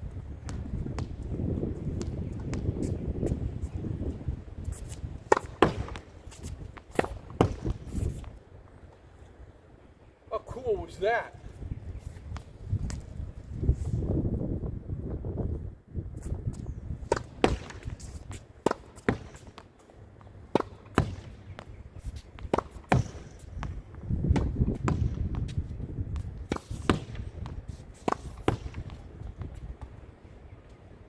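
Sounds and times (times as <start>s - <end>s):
wind rumbling on microphone: 0.0s - 18.6s, 21.2s - 31.0s
tennis ball hitting racquet and wall: 4.7s - 8.4s, 16.5s - 30.0s.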